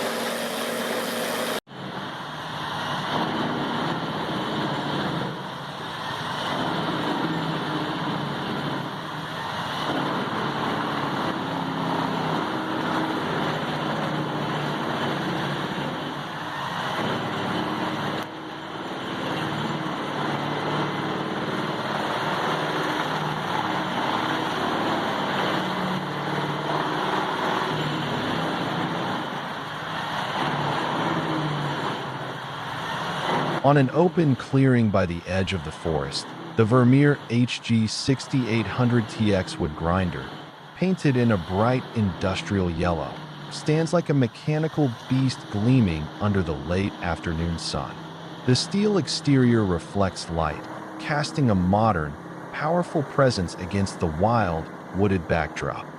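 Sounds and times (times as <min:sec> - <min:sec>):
wood grinding: 0:00.0 - 0:01.6
wood chipper engine drone: 0:00.0 - 0:37.3, 0:38.1 - 0:55.9.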